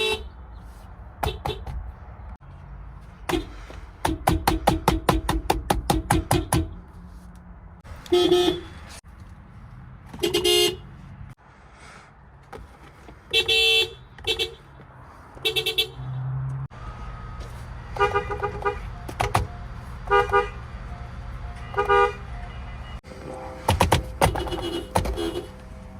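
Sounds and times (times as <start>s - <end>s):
car horn honks: 0.0s - 0.3s, 1.2s - 1.8s, 8.0s - 9.0s, 10.1s - 10.9s, 13.3s - 14.7s, 15.4s - 16.4s, 17.8s - 25.9s.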